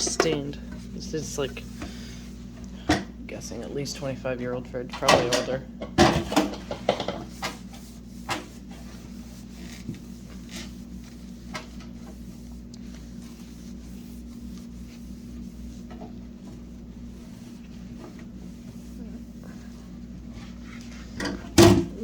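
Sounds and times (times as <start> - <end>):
fridge parts clattering: 0.0 - 0.9, 4.9 - 7.6
steady low hum: 0.0 - 22.0.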